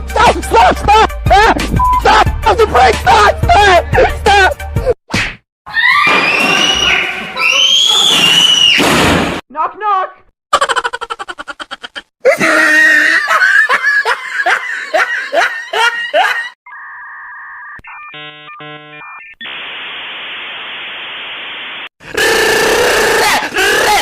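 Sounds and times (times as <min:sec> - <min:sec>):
chaotic shouting voices: 0:00.1 - 0:04.6, 0:22.4 - 0:24.0
voice yelling or laughing: 0:12.3 - 0:13.3, 0:22.2 - 0:24.0
two-tone telephone tone: 0:16.7 - 0:19.5
stepped electronic beeps: 0:17.5 - 0:19.6.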